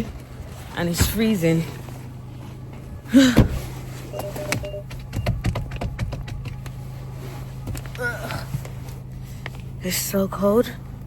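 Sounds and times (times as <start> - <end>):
car engine humming: 0.0 - 11.0
sharp clicks and knocks: 4.5 - 6.7.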